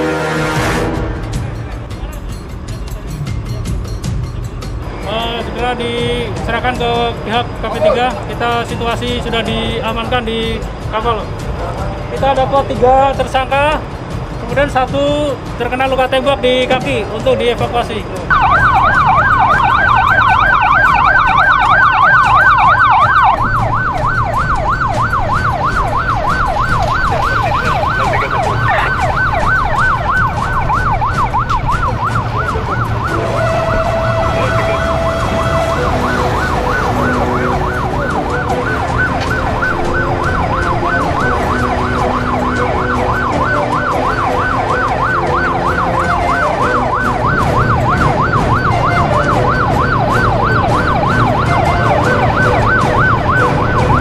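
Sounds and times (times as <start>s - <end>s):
siren yelping: 18.3s - 54.0s.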